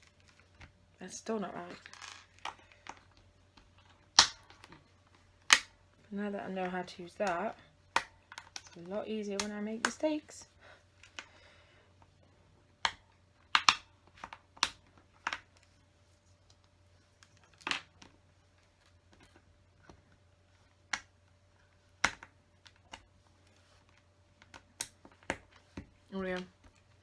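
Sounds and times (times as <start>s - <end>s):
faint steady hum: 0.0s - 27.0s.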